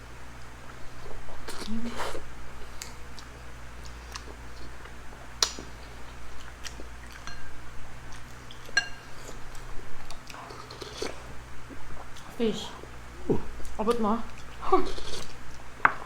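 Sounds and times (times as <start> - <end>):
utensils clinking on dishes: 8.8 - 9.2.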